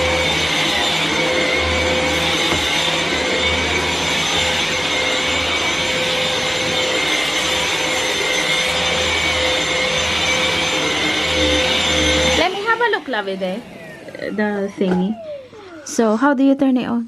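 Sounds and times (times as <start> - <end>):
stick vacuum motor whine: 0.0 - 16.6.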